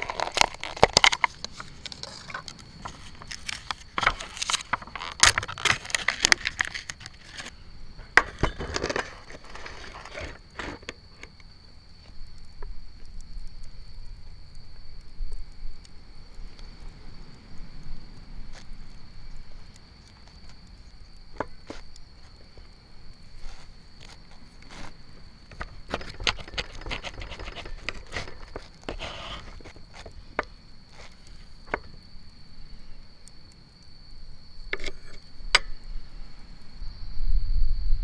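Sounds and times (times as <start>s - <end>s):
sharp clicks and light knocks: 0.0s - 7.5s, 25.5s - 32.0s.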